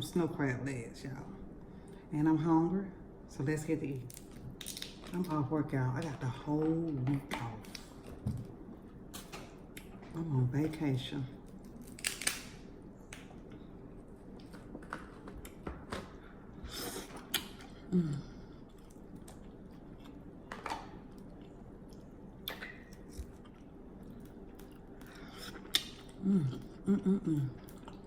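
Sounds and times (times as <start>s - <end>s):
wet mouth smacking and chewing: 17.2s - 17.7s, 21.2s - 26.2s.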